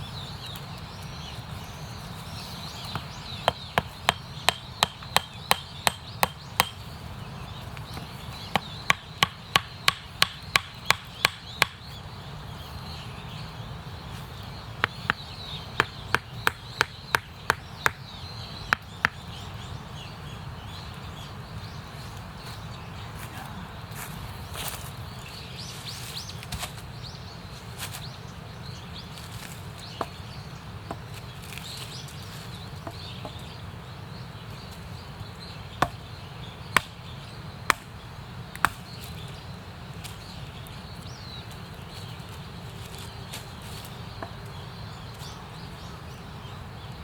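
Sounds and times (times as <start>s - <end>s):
hatchet chopping wood: 2.8s - 6.8s, 8.0s - 11.9s, 14.8s - 19.2s, 35.8s - 36.0s, 36.7s - 37.0s, 37.7s - 37.9s.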